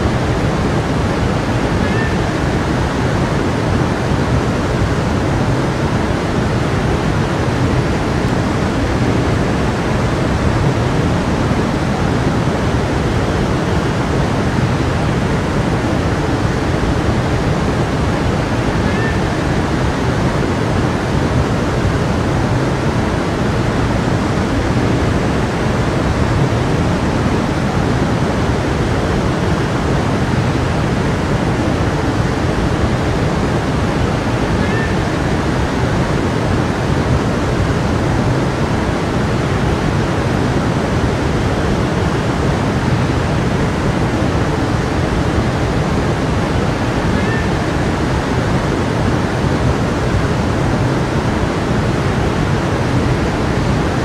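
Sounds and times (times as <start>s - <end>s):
stream flowing: 0.0s - 54.0s.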